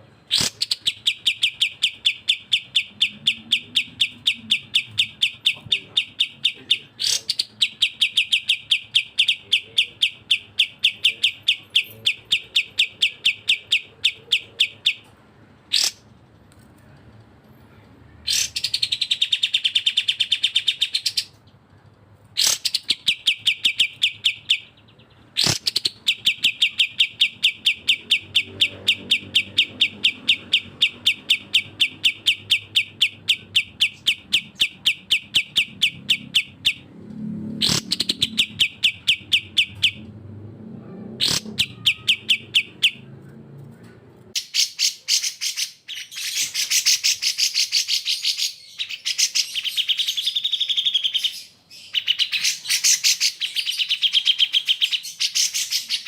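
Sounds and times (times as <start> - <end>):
bird harsh high chatter: 0.2 - 15.1, 15.7 - 16.1, 18.3 - 21.4, 22.4 - 36.9, 37.6 - 40.0, 41.2 - 43.1, 44.3 - 56.0.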